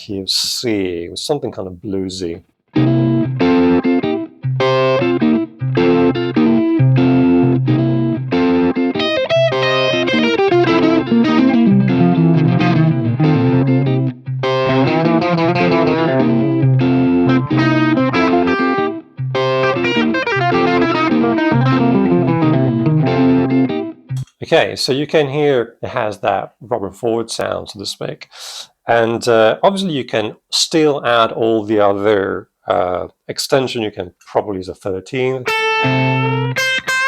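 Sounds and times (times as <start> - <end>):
electric guitar playing blues chords: 2.8 - 24.3, 35.3 - 37.0.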